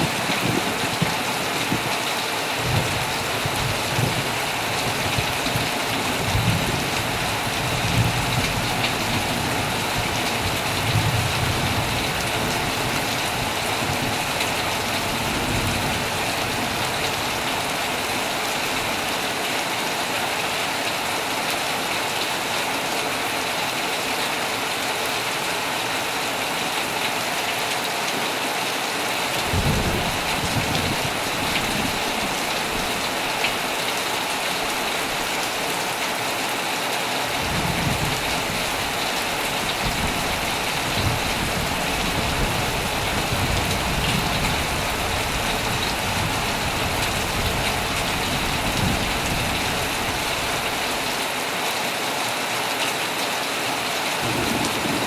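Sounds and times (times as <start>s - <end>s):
heavy rain on a tent: 0.0s - 55.0s
low thunder rumbles: 2.6s - 18.1s, 29.4s - 33.7s, 37.4s - 50.6s, 54.2s - 55.0s.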